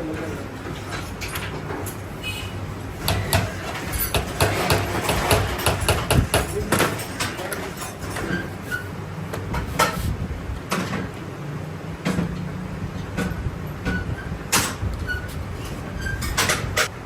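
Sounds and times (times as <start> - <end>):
metal knocks and clanks: 3.0 - 8.5, 15.7 - 17.0.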